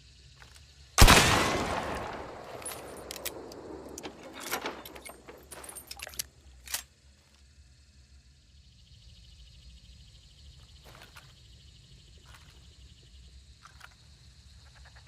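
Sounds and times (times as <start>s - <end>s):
rifle mechanism clicks and rattles: 0.4s - 6.9s
rifle shot: 1.0s - 5.4s.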